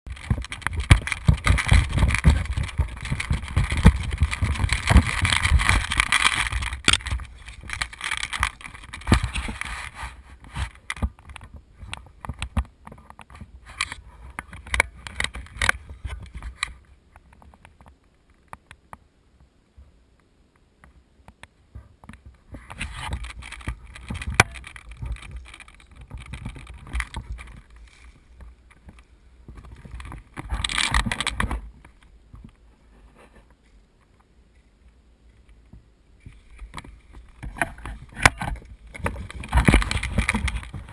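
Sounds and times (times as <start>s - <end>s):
clicks and rattling knocks: 0.1s - 9.7s, 22.0s - 32.0s
vehicle rumbling over rough ground: 0.1s - 9.7s.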